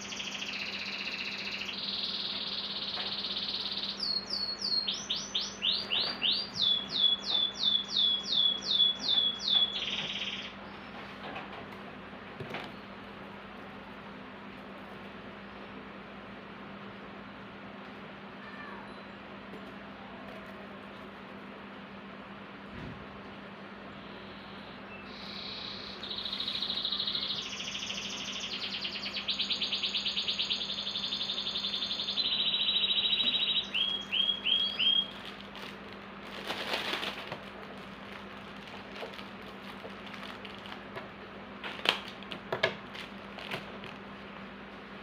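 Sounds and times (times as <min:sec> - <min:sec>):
songbird buzzy trills: 0:00.0 - 0:11.0, 0:23.7 - 0:42.2
clicks and rustles: 0:35.1 - 0:44.2.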